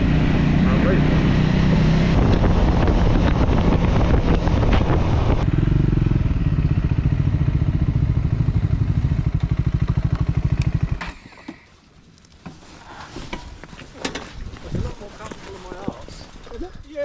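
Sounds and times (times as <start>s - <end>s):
motorcycle engine: 0.0s - 12.1s
wind and road noise: 0.0s - 17.0s.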